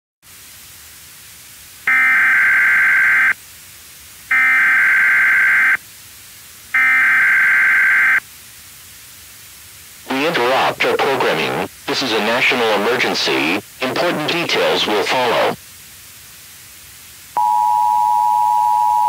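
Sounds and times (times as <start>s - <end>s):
background hiss: 0.2s - 19.0s
digital data tone bursts: 1.9s - 3.4s, 4.3s - 5.8s, 6.8s - 8.2s.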